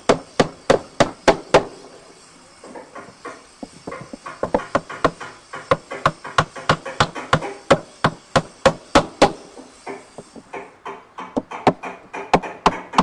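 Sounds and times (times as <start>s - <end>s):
hammer driving nails into wood: 3.0s - 13.0s.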